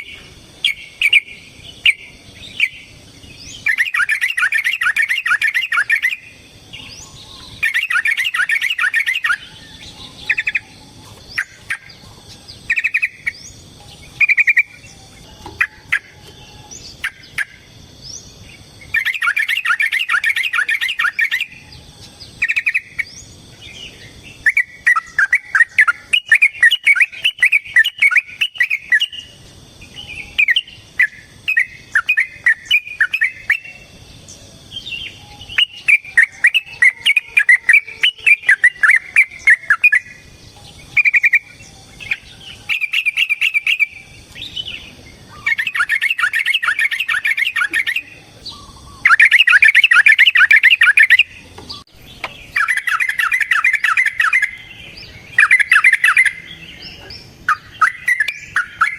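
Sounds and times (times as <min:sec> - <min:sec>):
bulbul chattering song: 0:00.0 - 0:58.9.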